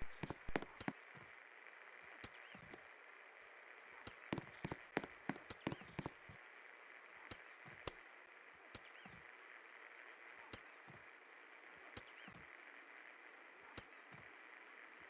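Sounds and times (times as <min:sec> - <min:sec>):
sharp clicks and taps: 0:00.0 - 0:01.0, 0:04.1 - 0:06.1.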